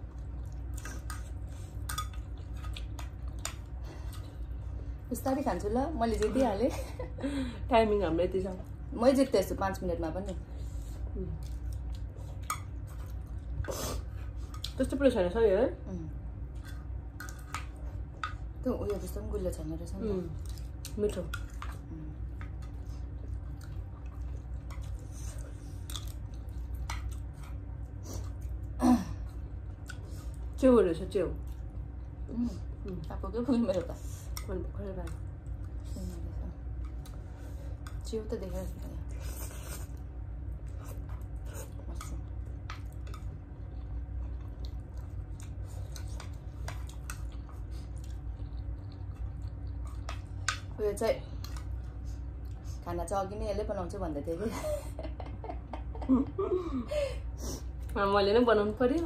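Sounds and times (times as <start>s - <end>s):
chewing food with wet mouth clicks: 0.0s - 4.8s, 11.3s - 14.8s, 20.0s - 30.6s, 31.3s - 52.7s
low steady hum: 0.0s - 59.0s.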